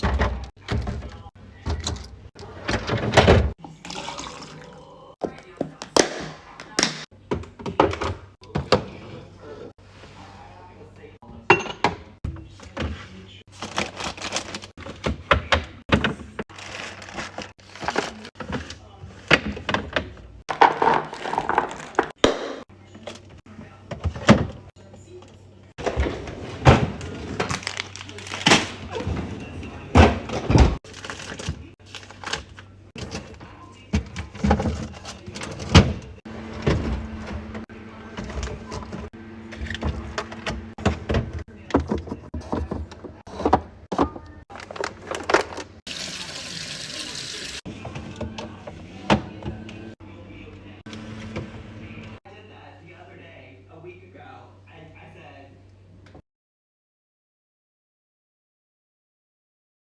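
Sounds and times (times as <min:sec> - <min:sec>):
groceries knocking on fridge shelves: 0:00.0 - 0:03.6, 0:11.3 - 0:22.7, 0:25.8 - 0:46.4.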